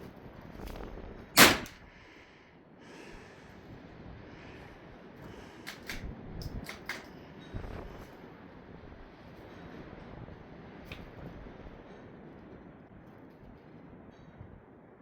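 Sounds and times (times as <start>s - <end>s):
rifle shot with echo: 1.4s - 1.8s.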